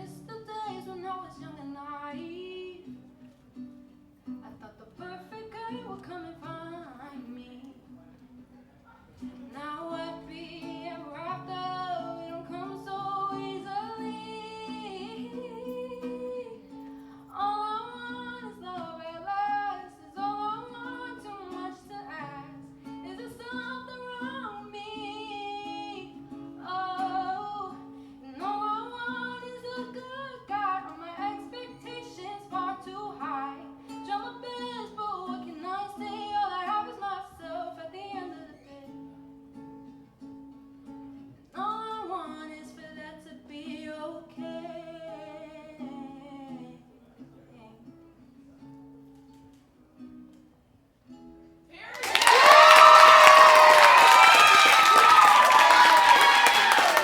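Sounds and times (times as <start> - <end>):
person singing: 9.5 - 39.1.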